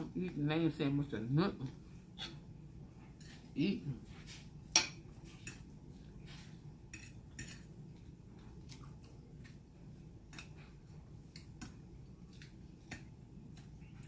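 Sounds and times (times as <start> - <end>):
low room hum: 0.0 - 14.0
cutlery clicking against plate: 6.9 - 7.7, 10.3 - 10.6.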